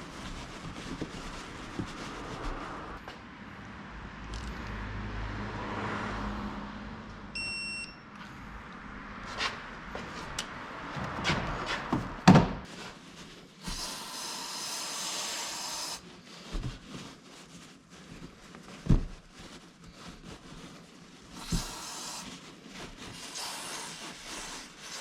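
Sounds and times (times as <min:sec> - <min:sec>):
compressed air hissing into tyre: 0:13.6 - 0:16.0, 0:21.3 - 0:22.4, 0:23.1 - 0:25.0.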